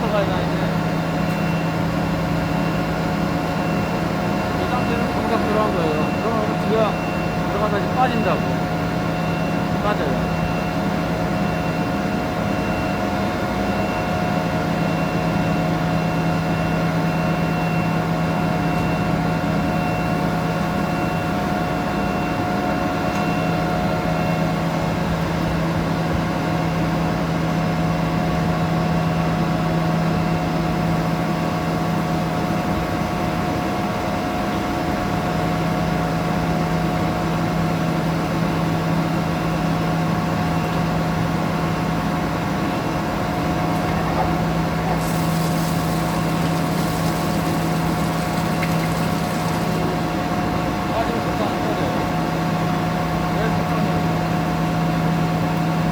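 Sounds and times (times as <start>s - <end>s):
hydraulic machine humming: 41.2s - 54.1s.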